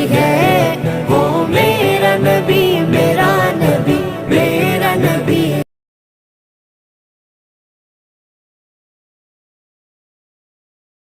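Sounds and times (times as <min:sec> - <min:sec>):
devotional singing: 0:00.0 - 0:05.7.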